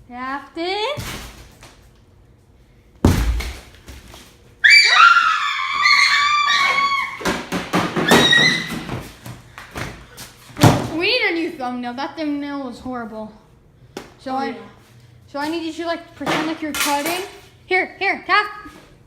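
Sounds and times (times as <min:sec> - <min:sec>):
shrill high-pitched scream: 0:04.6 - 0:07.3, 0:08.0 - 0:08.8.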